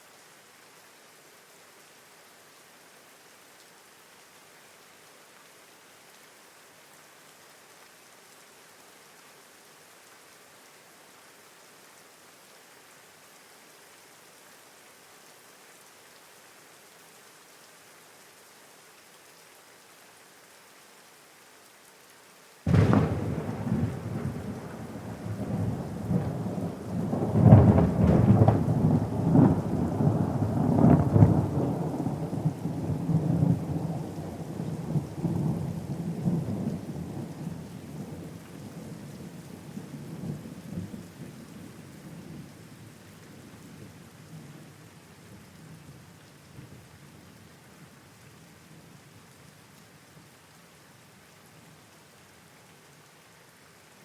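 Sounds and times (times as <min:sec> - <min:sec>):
rain falling: 0:00.0 - 0:54.0
thunder rolling: 0:22.7 - 0:31.8.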